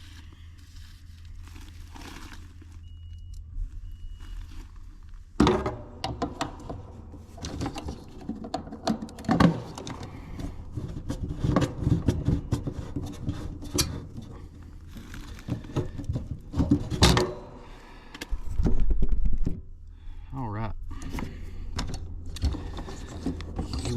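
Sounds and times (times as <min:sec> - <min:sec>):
steady low hum: 0:00.0 - 0:23.9
clicks and rattles of parts: 0:05.5 - 0:18.9.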